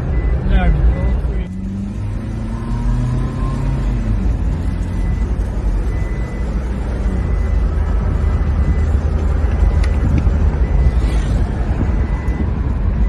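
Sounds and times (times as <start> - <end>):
car engine rumbling: 0.0 - 13.0.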